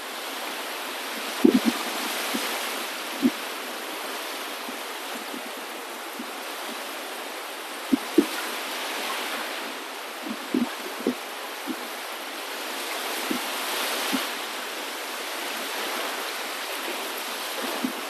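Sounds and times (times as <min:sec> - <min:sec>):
rushing water: 0:00.0 - 0:18.0.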